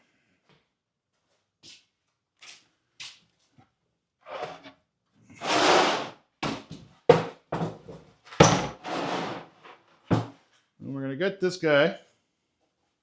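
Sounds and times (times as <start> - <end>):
wood sliding scrape: 4.3 - 4.7, 5.4 - 6.2, 8.8 - 10.2.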